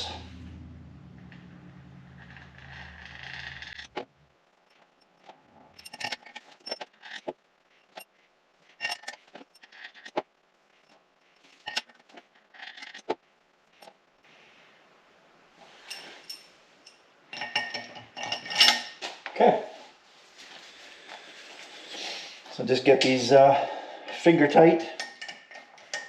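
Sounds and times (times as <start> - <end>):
metal bolts clinking: 5.7 - 7.2, 15.8 - 19.1, 24.9 - 26.0.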